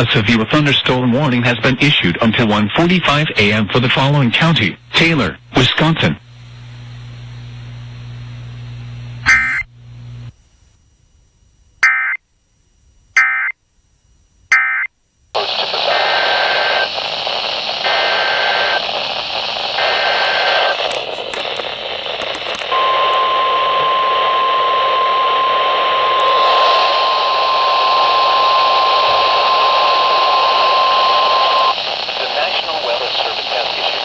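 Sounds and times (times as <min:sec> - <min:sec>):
radio static hiss: 0:00.0 - 0:10.8, 0:15.3 - 0:34.0
steady warning alarm tone: 0:22.6 - 0:31.8
faint electronic beep: 0:22.7 - 0:26.2.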